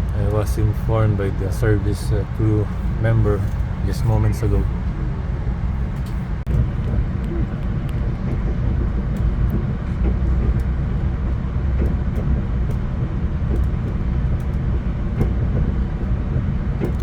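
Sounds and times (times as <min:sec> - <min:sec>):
train car rumble: 0:00.0 - 0:17.0
light clicks and rattles: 0:05.8 - 0:17.0.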